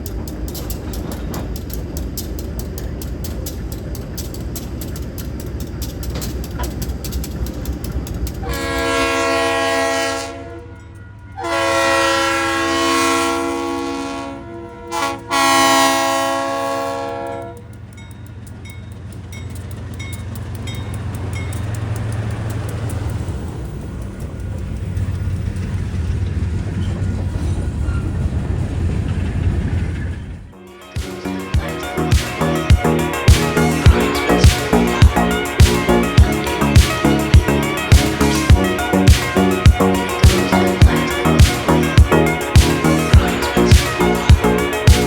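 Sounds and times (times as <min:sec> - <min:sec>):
train running on rails: 0:00.0 - 0:45.0
locomotive horn: 0:08.4 - 0:17.7, 0:30.6 - 0:45.0.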